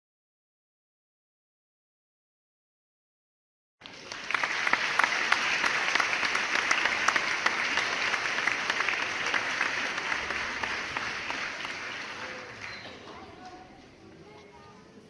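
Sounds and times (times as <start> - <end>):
audience applause: 3.8 - 13.5.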